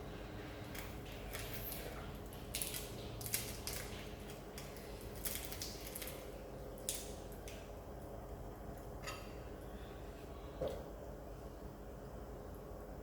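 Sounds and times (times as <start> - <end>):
crunchy fried fish being chewed: 0.4 - 7.7.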